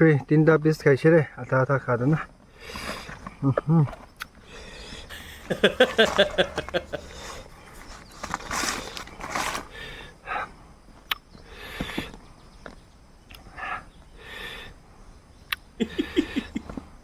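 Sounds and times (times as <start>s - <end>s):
sharp breaths and sniffs: 2.0s - 12.6s, 13.3s - 15.2s.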